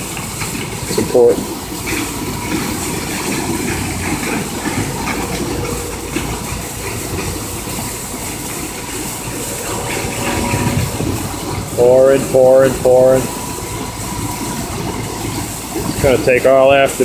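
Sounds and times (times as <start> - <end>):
concrete pump truck running: 0.0 - 17.0.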